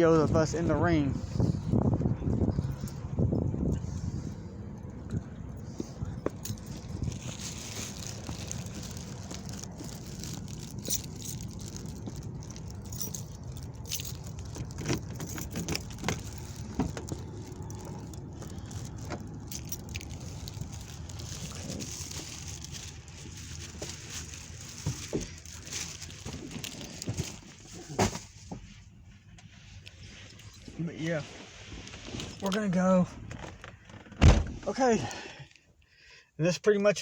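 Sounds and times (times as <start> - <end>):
low vehicle rumble: 0.0 - 35.7
clicks and jingling: 5.2 - 27.4.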